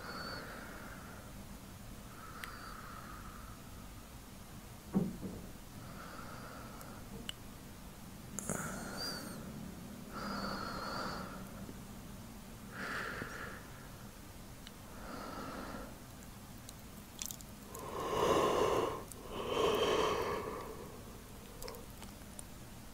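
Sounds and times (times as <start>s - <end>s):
man breathing slowly: 0.0s - 1.4s, 2.1s - 3.8s, 8.4s - 9.4s, 10.1s - 11.7s, 12.7s - 14.1s, 14.9s - 16.0s, 17.6s - 22.0s.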